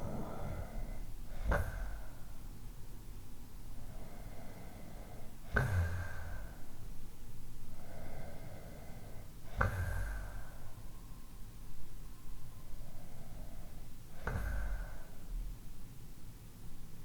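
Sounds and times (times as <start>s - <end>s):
soft breath: 0.0s - 2.5s, 3.7s - 6.8s, 7.6s - 11.3s, 11.9s - 15.5s
person snoring: 14.2s - 15.1s.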